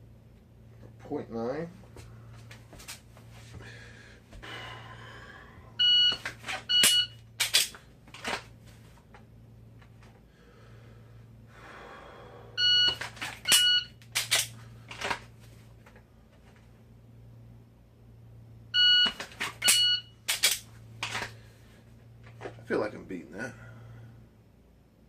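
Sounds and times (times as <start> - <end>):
shot timer beeps: 5.8 - 7.2, 12.6 - 14.0, 18.8 - 20.1.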